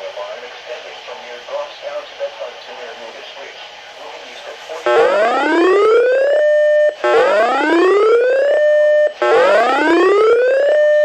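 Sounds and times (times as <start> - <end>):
electronic siren whooping: 4.9 - 11.0.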